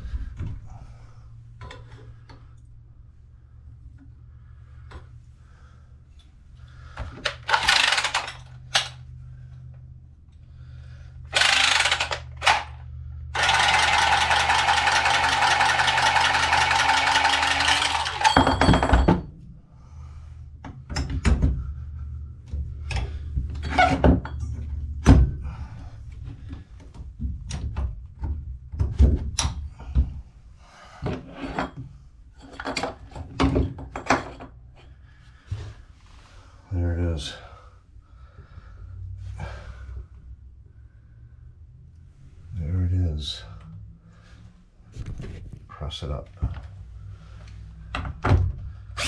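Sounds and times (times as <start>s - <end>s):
power tool running: 7.4s - 8.9s, 11.3s - 12.8s, 13.4s - 18.4s
clanks of tools and metal fittings: 17.9s - 19.3s, 31.3s - 34.9s.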